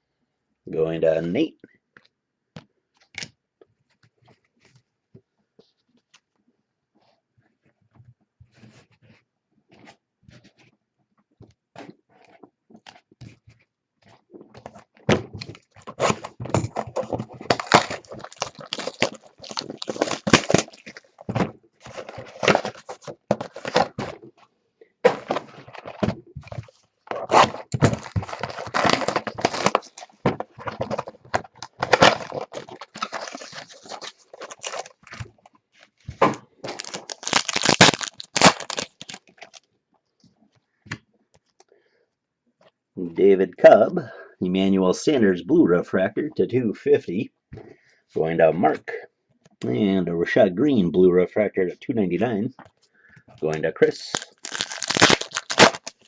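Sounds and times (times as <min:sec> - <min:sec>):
wrappers crinkling: 0:15.4 - 0:24.2, 0:26.5 - 0:35.4, 0:36.6 - 0:39.7, 0:54.0 - 0:56.0
cards clicking and rustling: 0:15.4 - 0:24.3, 0:25.0 - 0:35.4, 0:36.2 - 0:39.6, 0:53.5 - 0:56.0.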